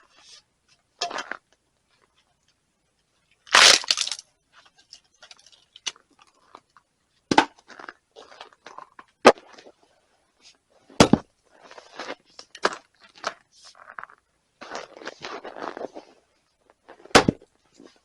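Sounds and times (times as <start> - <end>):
wood splitting crunch: 3.5 - 4.2, 17.0 - 17.5.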